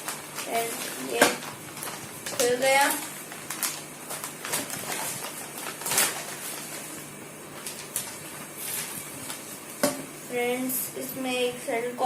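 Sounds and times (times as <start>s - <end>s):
packaging rustling and clicking: 0.0s - 9.5s.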